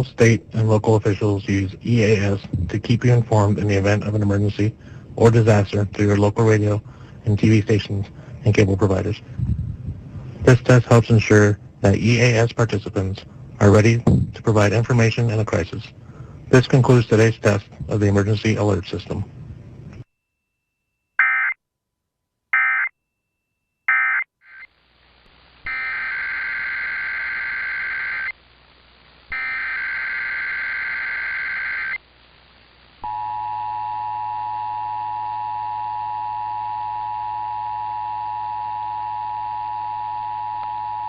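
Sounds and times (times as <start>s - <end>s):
warbling data bursts: 25.7s - 28.4s, 29.3s - 32.0s.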